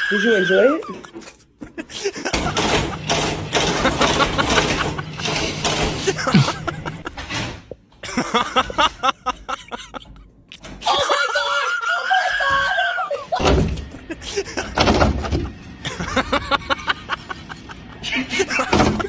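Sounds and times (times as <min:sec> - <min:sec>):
voices: 0:00.0 - 0:02.5, 0:08.5 - 0:15.4
people laughing: 0:00.1 - 0:07.2, 0:08.0 - 0:19.0.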